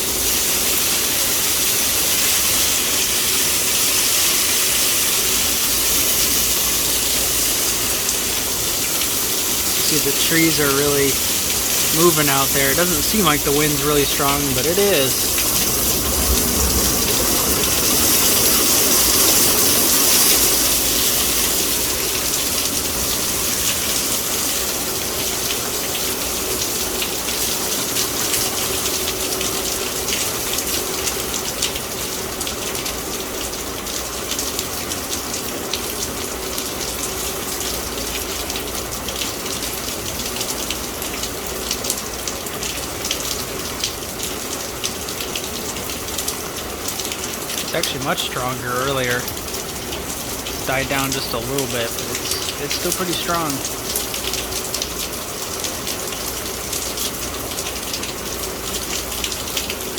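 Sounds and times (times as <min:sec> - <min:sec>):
heavy rain pouring in wind: 0:00.0 - 0:59.9.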